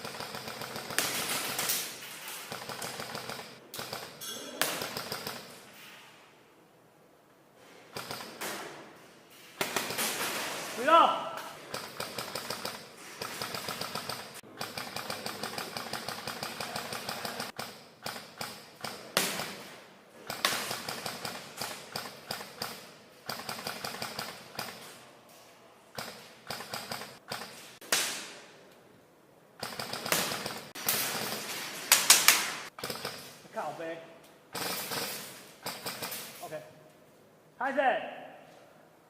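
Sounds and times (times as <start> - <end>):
airsoft guns firing: 0.0 - 5.6, 9.6 - 24.9, 29.6 - 33.4, 34.5 - 36.5.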